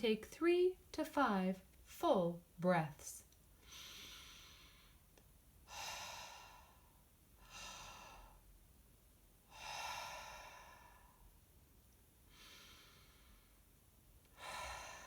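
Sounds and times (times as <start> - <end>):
person breathing deeply: 3.6 - 5.0, 14.4 - 15.0.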